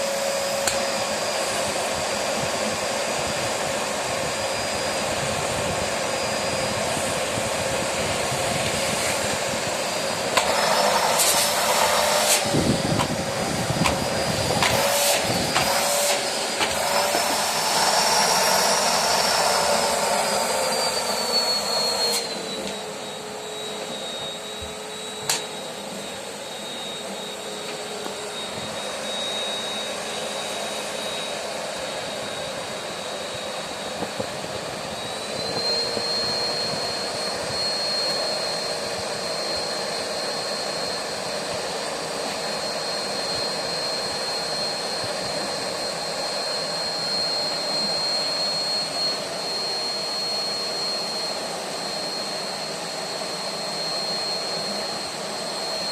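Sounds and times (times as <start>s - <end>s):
vacuum cleaner running: 0.0s - 55.9s.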